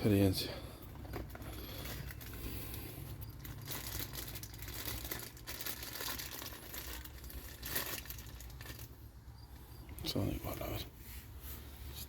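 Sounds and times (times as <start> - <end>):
plastic packaging crinkling: 1.0 - 2.6, 3.2 - 9.0.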